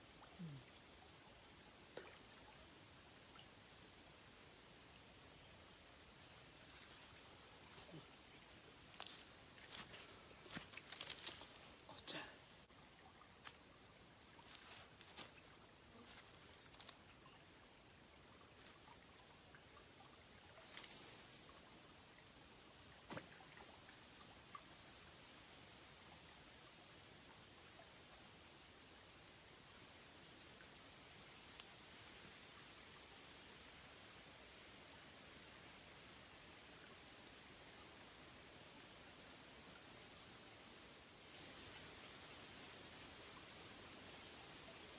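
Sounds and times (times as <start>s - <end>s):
insects chirring: 0.0s - 44.9s
brief rustle: 10.6s - 11.5s.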